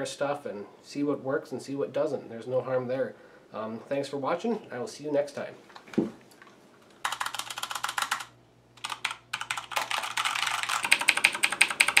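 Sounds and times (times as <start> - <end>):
clicky keyboard typing: 7.0 - 12.0.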